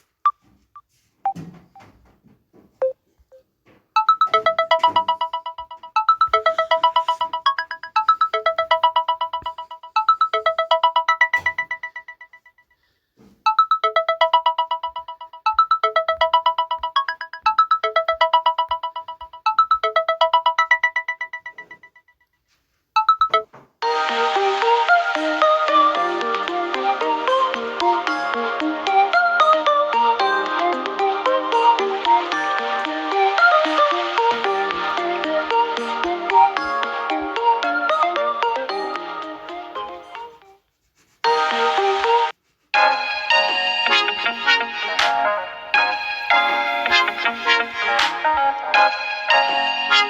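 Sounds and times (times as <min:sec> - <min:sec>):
different phone tone: 0:04.0 - 0:12.5, 0:23.0 - 0:23.6, 0:45.8 - 0:48.1
electronic ringtone melody: 0:04.0 - 0:12.9, 0:13.5 - 0:22.2, 0:23.0 - 0:40.4, 0:41.3 - 0:50.0.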